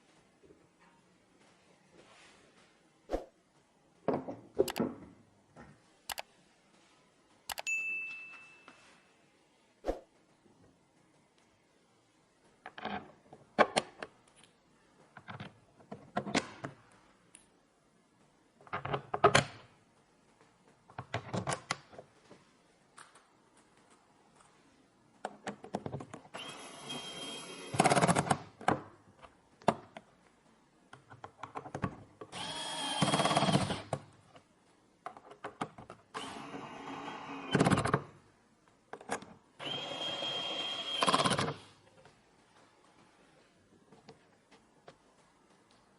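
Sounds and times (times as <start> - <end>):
computer parts clicking and knocking: 4.1 - 5.1, 27.7 - 30.0
electric screwdriver whine: 26.4 - 27.8, 32.4 - 33.8, 39.6 - 41.6.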